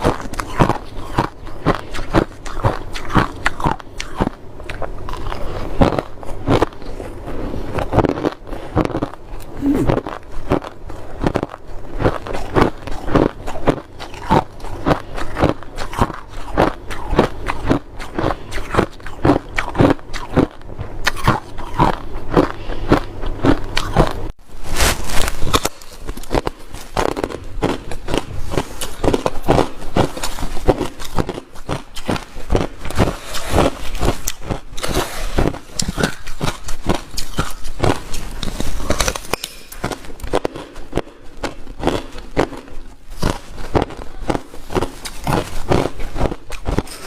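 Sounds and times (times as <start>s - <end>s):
ice being chewed: 0.0s - 47.0s.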